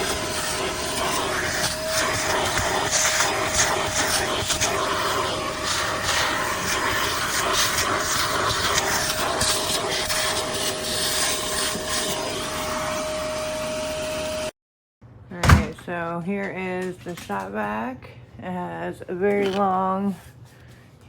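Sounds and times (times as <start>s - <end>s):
wet dry vacuum running: 0.0s - 14.5s.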